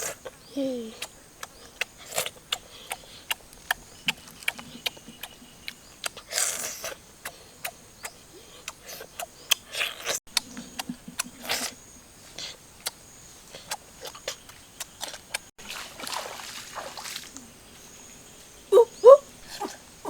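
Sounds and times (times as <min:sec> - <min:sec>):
person chewing with wet smacks: 0:01.0 - 0:11.8, 0:12.4 - 0:15.5
slurping or crunching: 0:08.9 - 0:11.8.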